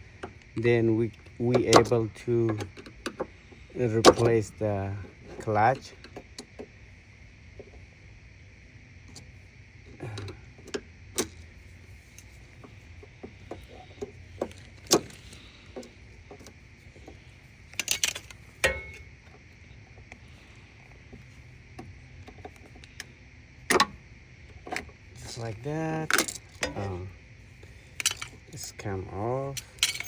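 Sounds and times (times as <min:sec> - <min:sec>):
metal parts and tools clinking: 0:17.7 - 0:19.1, 0:26.0 - 0:27.1, 0:27.9 - 0:30.0
sharp metal clank ringing: 0:18.6 - 0:19.1.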